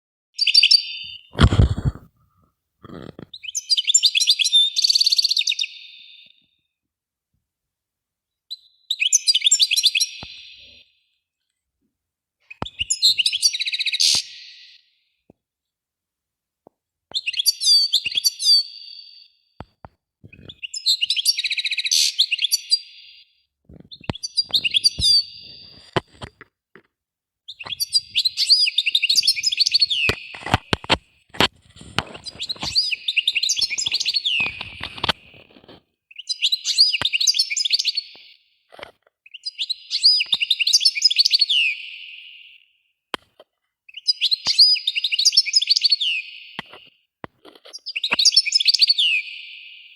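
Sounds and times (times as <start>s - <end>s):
songbird singing trills: 0.4s - 1.4s, 8.5s - 10.8s, 27.5s - 30.5s, 32.2s - 35.0s, 43.9s - 46.6s.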